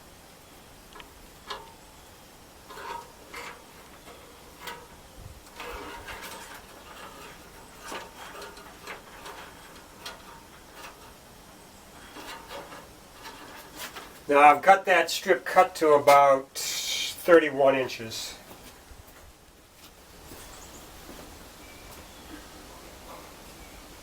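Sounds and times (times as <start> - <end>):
rubbing of small parts: 0.8 - 17.4.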